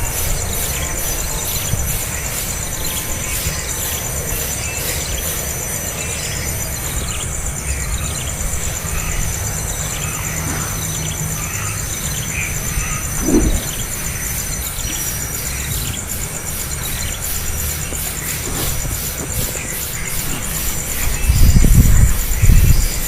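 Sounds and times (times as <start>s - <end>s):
nestlings squealing and chirping: 6.1s - 23.0s
low thump: 13.2s - 13.9s.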